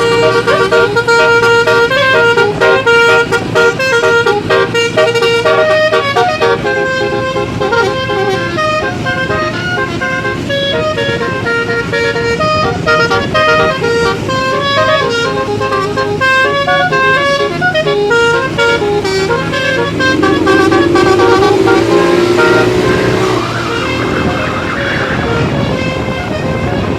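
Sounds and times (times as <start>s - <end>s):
bus engine running: 0.0s - 26.9s
musical bus horn melody: 0.0s - 26.9s
sliding siren-like tone: 16.4s - 26.9s.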